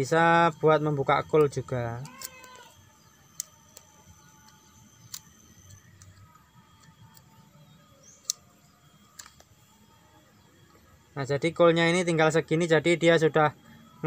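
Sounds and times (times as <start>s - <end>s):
faint clicks of small parts: 1.0s - 7.4s, 8.2s - 9.6s.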